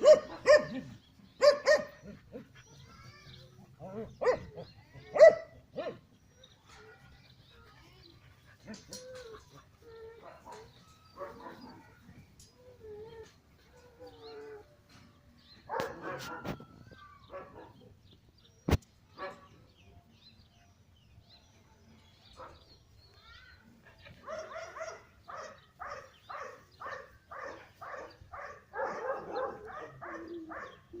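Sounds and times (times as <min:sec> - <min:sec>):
dog barking and yipping: 0:00.0 - 0:02.5, 0:03.8 - 0:06.0, 0:15.7 - 0:16.6, 0:24.2 - 0:31.0.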